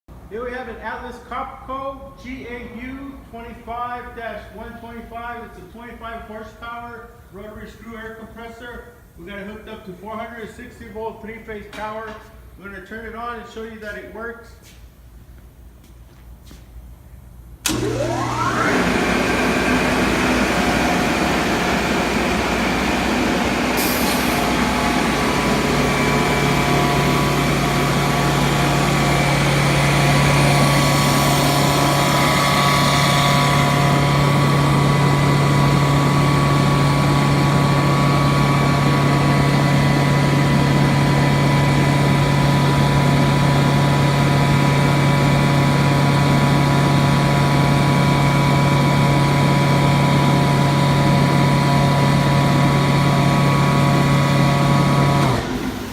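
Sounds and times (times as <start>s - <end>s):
air compressor running: 17.6s - 55.9s
deeper hum: 17.7s - 54.2s
brief hiss: 23.8s - 24.5s.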